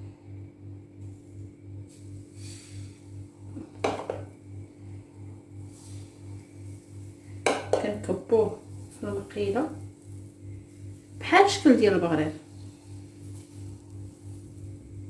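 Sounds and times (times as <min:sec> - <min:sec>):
low pulsing hum: 0:00.0 - 0:15.0
kitchenware clinking: 0:07.5 - 0:08.0.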